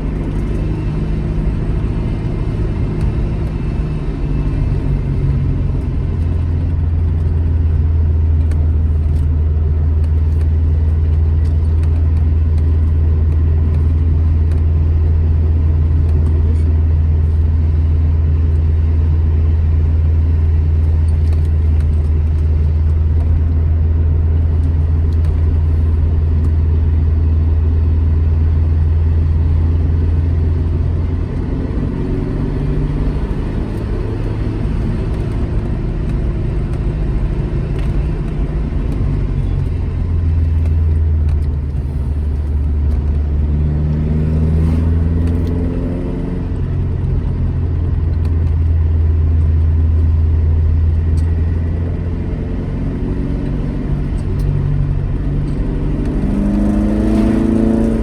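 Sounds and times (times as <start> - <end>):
car engine pulling under load: 28.6 - 58.0.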